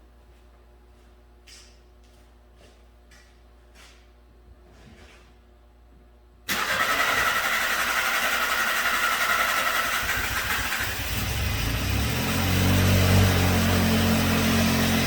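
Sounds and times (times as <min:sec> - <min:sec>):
starter motor cranking engine: 0:06.5 - 0:14.1.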